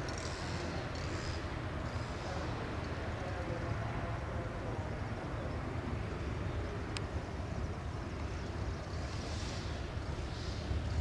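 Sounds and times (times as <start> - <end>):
distant aircraft engines droning: 0.0 - 11.0
wind buffeting microphone: 9.7 - 11.0.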